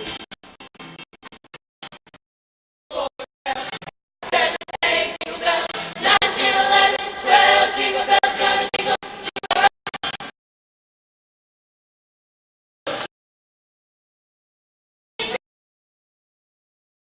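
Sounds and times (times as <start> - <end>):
choir singing: 4.2 - 9.7.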